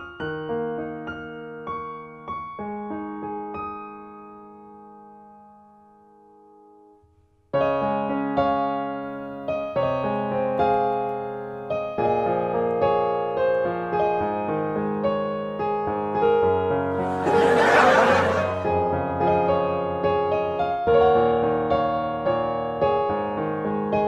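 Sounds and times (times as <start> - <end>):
electric piano music: 7.5 - 24.0.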